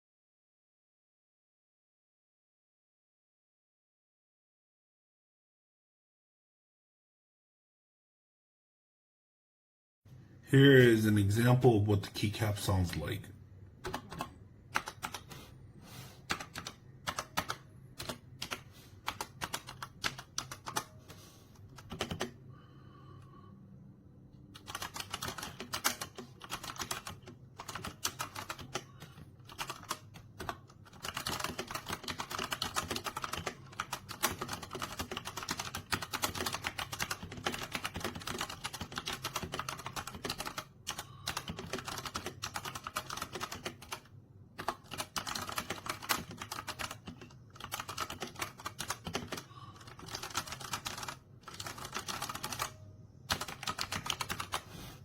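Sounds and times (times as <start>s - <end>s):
mechanical keyboard typing: 13.8s - 15.3s, 16.3s - 21.0s, 21.6s - 22.4s, 24.5s - 54.7s.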